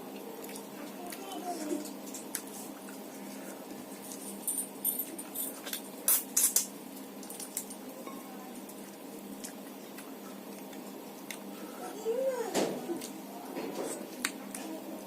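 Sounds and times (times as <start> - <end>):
steady background hum: 0.0 - 15.0
wet eating clicks and smacks: 0.1 - 3.0, 5.6 - 7.8, 8.8 - 11.5, 14.1 - 14.7.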